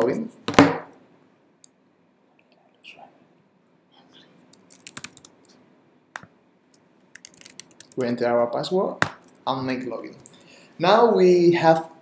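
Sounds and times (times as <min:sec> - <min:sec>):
keyboard keystrokes: 0:04.7 - 0:05.3.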